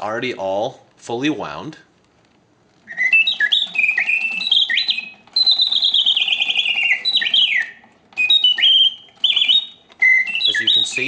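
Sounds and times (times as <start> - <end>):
mechanical bird whistling birdsong: 2.8 - 11.0.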